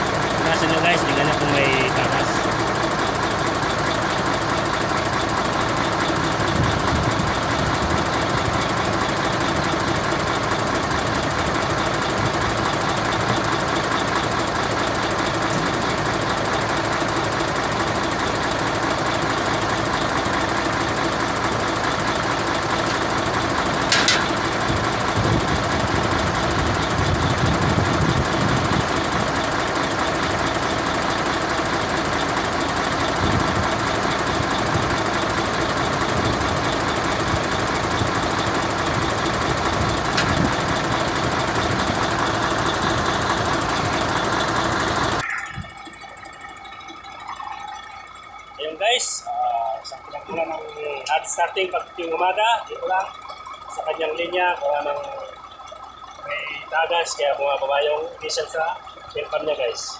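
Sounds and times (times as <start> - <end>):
diesel truck engine idling: 0.0 - 59.9.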